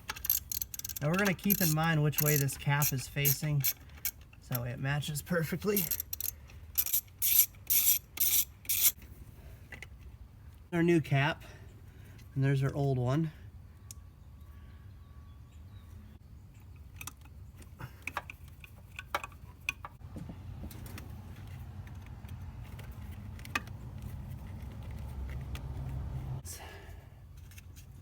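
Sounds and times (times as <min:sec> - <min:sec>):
plastic and metal parts clicking: 0:00.0 - 0:04.7, 0:05.6 - 0:09.0, 0:16.8 - 0:20.0.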